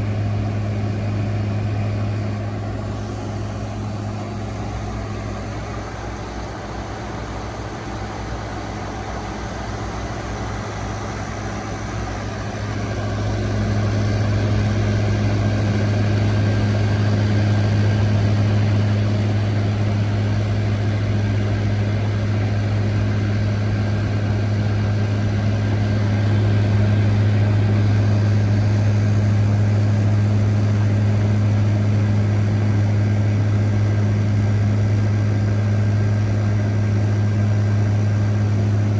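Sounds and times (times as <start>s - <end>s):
air conditioner humming: 0.0s - 20.8s.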